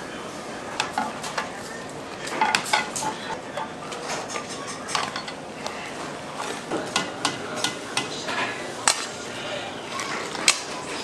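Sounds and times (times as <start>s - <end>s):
utensils clinking against dishes: 0.8s - 9.3s.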